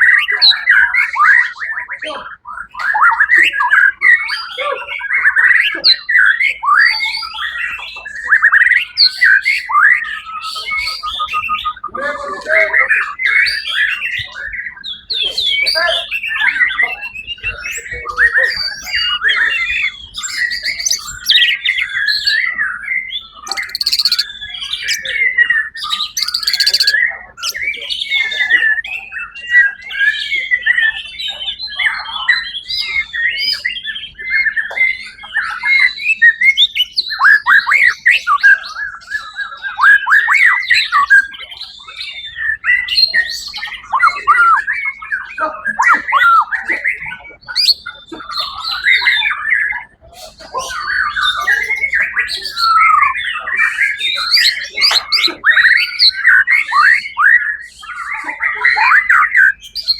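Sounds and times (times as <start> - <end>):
bird singing whistled phrases: 12.6 - 49.8, 50.7 - 59.9
harsh rasping bird notes: 20.2 - 21.6, 23.4 - 25.1, 25.8 - 27.7.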